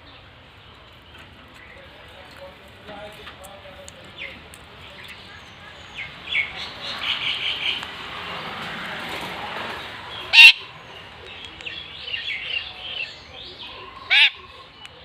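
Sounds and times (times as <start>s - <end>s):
parakeet calling: 10.2s - 13.2s, 13.9s - 14.6s.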